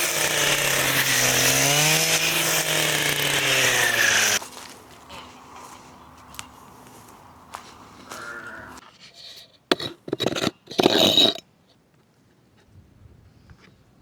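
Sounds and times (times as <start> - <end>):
rough scraping strokes: 9.7 - 11.4.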